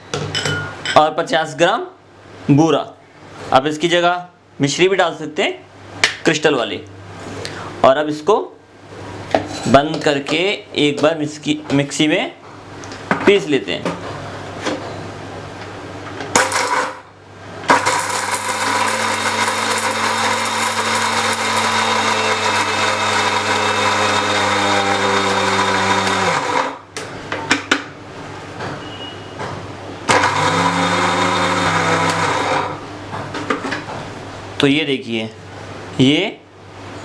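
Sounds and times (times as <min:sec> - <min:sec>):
mixer grinder motor grinding: 0:16.4 - 0:17.1, 0:17.7 - 0:26.9, 0:30.1 - 0:32.8.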